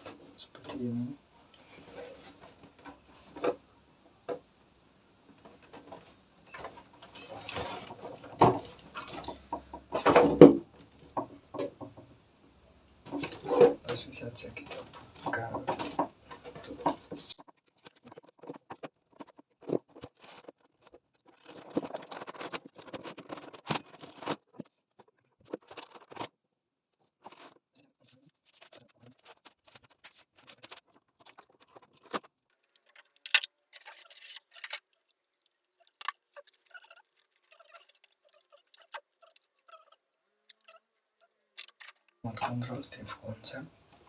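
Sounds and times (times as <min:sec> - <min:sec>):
cardboard packaging rustling: 0:16.3 - 0:26.3, 0:27.0 - 0:39.7.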